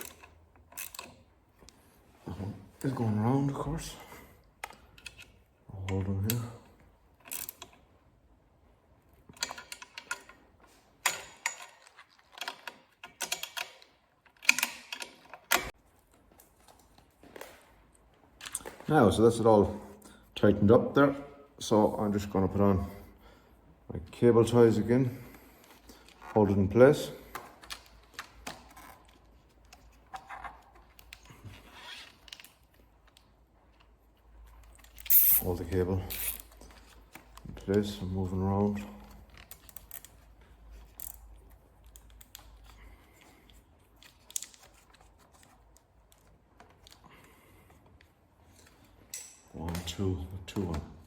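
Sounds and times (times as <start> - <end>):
cable ties clicking and rasping: 27.3 - 47.1
hand tool metallic clicks: 36.1 - 36.4.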